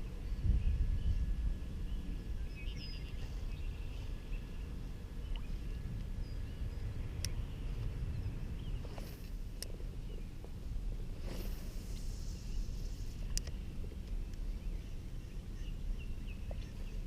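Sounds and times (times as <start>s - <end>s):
low rumble: 0.0s - 17.0s
bird chirps: 0.2s - 9.1s.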